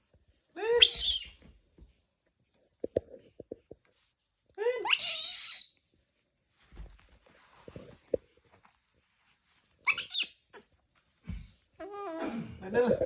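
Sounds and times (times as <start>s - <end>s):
baby monkey screaming: 0.7s - 1.4s, 4.8s - 5.7s, 9.9s - 10.3s
soft thumps and rustling: 6.6s - 8.8s.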